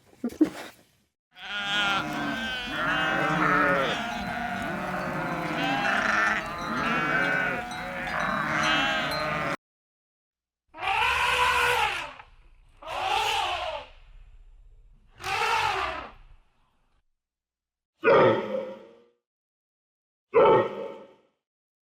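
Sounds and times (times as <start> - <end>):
sheep bleating: 1.4 - 9.6.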